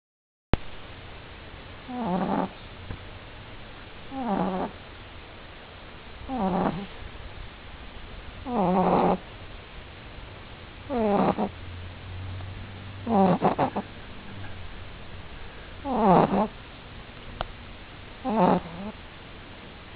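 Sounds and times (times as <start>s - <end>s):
puppy snoring: 1.9s - 2.6s, 4.1s - 4.8s, 6.3s - 7.0s, 8.4s - 9.3s, 10.8s - 11.6s, 13.0s - 13.9s, 15.8s - 16.6s, 18.2s - 19.0s.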